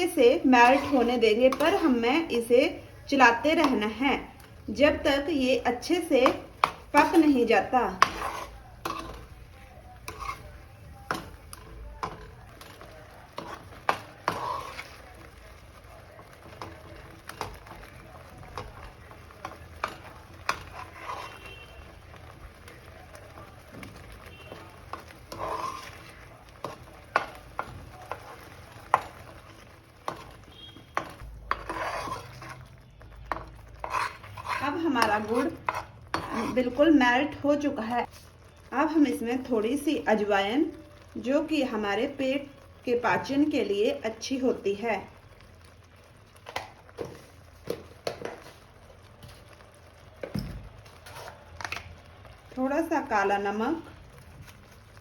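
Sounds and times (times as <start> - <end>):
utensil scraping and knocking pan: 0.5 - 2.1, 5.8 - 12.8, 13.4 - 15.0, 19.4 - 21.7, 24.4 - 29.3, 30.1 - 32.7, 33.3 - 36.8
metal spoon clinking on pan: 8.0 - 9.4.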